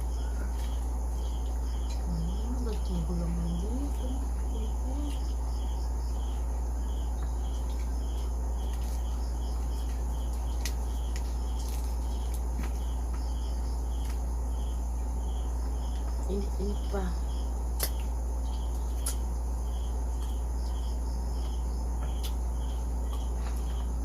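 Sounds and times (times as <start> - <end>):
cricket chirping: 0.0 - 24.0
low hum: 0.0 - 24.0
crunching crispy pork skin: 7.5 - 13.3.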